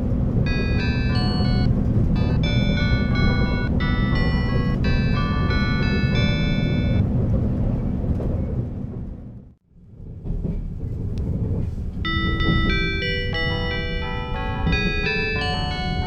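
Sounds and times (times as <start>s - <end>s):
train running rumble: 0.0s - 16.0s
melody chime over speakers: 0.5s - 7.0s, 12.1s - 16.0s.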